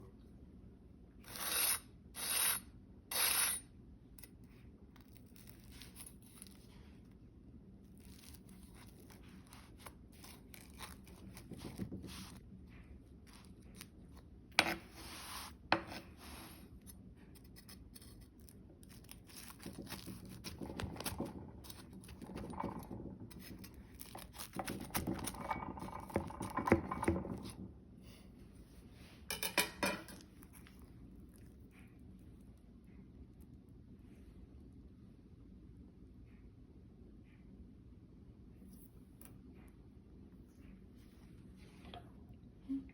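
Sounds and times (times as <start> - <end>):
utensils clattering against bowl: 24.5 - 27.6, 29.3 - 30.2.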